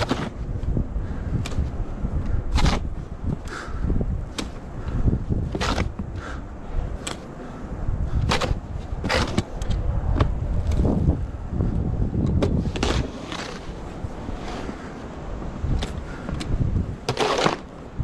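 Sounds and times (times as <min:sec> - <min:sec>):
wind buffeting microphone: 0:00.0 - 0:18.0
snow shovel scraping pavement: 0:05.5 - 0:06.0, 0:08.3 - 0:09.6, 0:12.6 - 0:14.8, 0:17.0 - 0:17.8.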